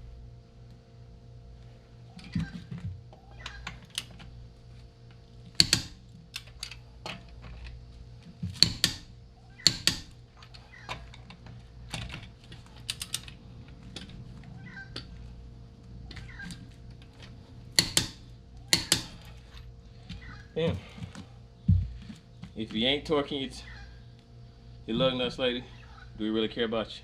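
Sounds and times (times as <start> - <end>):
steady low hum: 0.0 - 27.0
hand tools clicking and knocking: 5.5 - 7.8, 8.4 - 14.2, 16.1 - 19.4.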